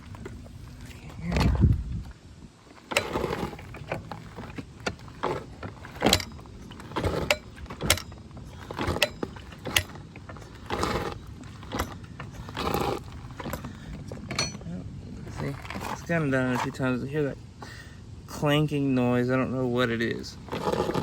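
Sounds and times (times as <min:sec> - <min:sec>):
sharp metallic clanks: 0:05.9 - 0:14.8.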